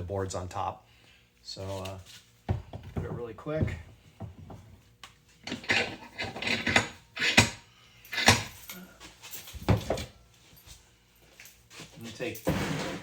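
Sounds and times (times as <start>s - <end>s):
tools clattering and scraping: 2.8s - 13.0s.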